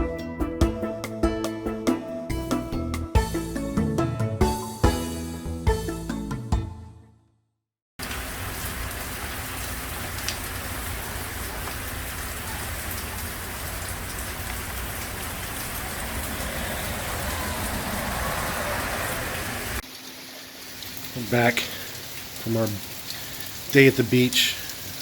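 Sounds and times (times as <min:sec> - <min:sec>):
steady rain hiss: 0:08.0 - 0:25.0.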